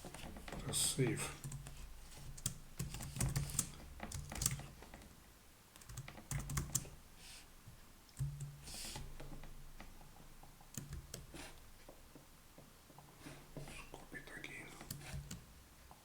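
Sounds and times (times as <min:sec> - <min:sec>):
computer keyboard typing: 0:01.4 - 0:04.7, 0:05.8 - 0:07.0, 0:10.7 - 0:11.3, 0:14.8 - 0:15.5.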